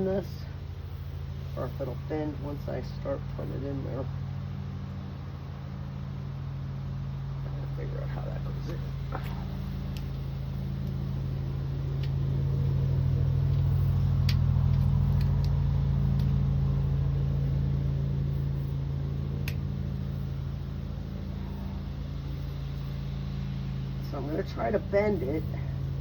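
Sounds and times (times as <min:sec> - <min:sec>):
low mechanical hum: 0:00.0 - 0:26.0
light clicks: 0:13.5 - 0:16.4.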